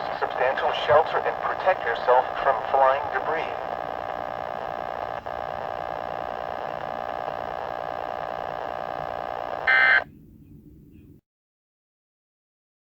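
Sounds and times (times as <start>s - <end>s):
faint low hum: 0.0s - 11.2s
electronic alarm tone: 9.6s - 10.1s.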